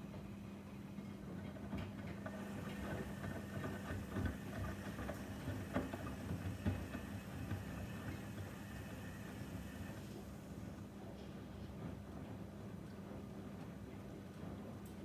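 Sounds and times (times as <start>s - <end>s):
washing machine motor hum: 2.2s - 10.4s.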